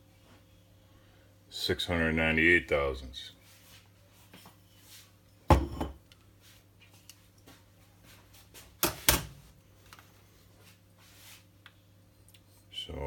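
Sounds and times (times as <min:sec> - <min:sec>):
hard objects knocking on a bench: 0:05.5 - 0:06.0.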